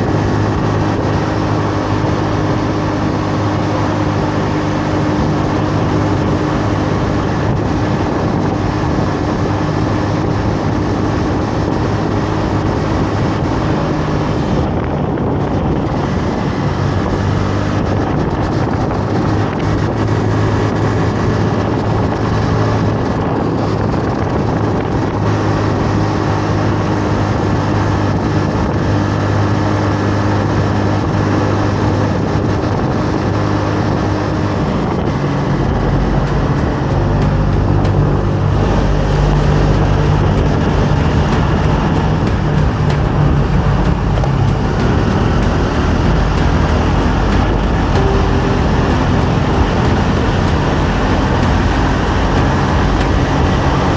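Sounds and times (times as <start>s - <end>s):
motorcycle engine running: 35.0s - 53.9s.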